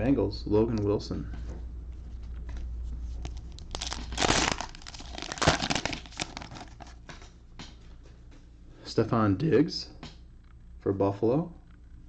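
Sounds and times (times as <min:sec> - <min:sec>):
plastic wrapper tearing and crinkling: 0:03.2 - 0:07.0.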